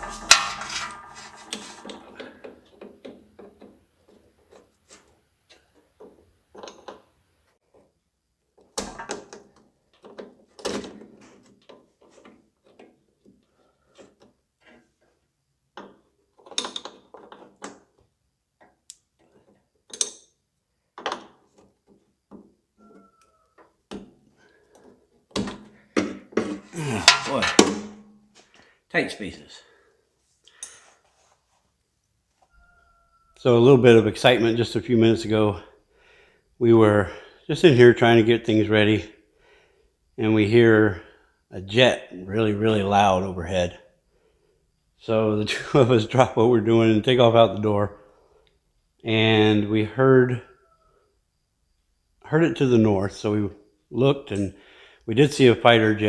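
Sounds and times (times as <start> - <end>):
metal knock with ringing: 0.0 - 2.4
hand tools and metal parts clanking: 0.0 - 2.5, 26.4 - 28.2.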